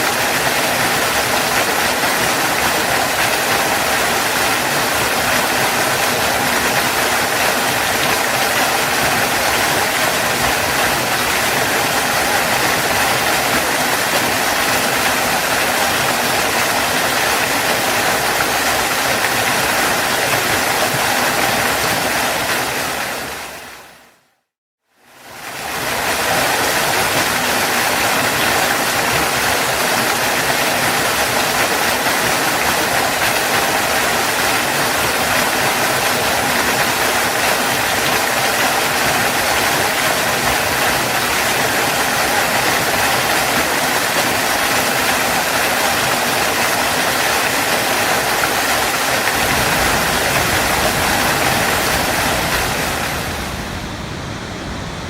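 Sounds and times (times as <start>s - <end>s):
waterfall rushing: 0.0s - 24.3s, 25.2s - 55.0s
deep rumble: 49.4s - 55.0s.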